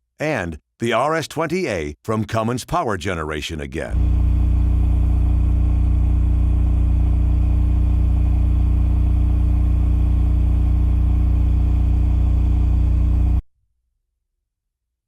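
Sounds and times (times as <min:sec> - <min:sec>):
generator engine humming: 0:03.9 - 0:13.4.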